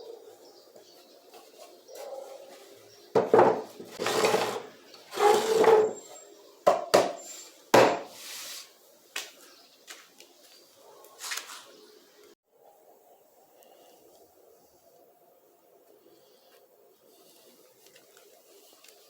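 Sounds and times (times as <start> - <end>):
knocks on wood: 3.2 - 3.7, 7.8 - 8.1
wood scraping: 3.2 - 6.0.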